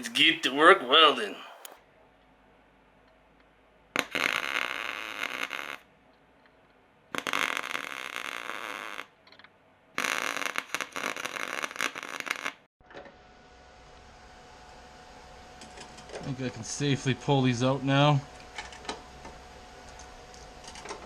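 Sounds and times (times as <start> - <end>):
welding crackling buzz: 4.0 - 5.9, 7.2 - 9.1, 10.0 - 12.6.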